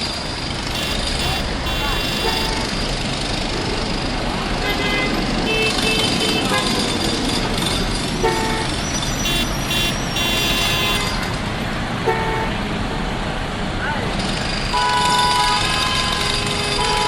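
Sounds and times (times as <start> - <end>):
street traffic: 0.0 - 17.0
car horns honking: 0.6 - 3.0, 4.6 - 7.6, 8.2 - 11.3, 12.0 - 12.6, 14.7 - 17.0
high-pitched horn tones: 0.7 - 2.8, 8.2 - 11.2.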